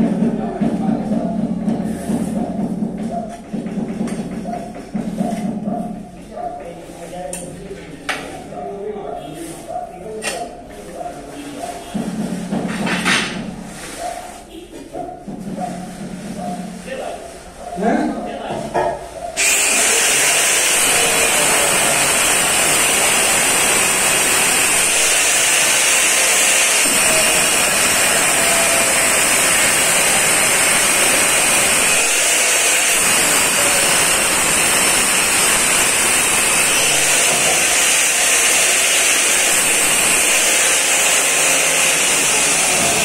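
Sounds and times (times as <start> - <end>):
construction machinery running: 19.4 - 43.0.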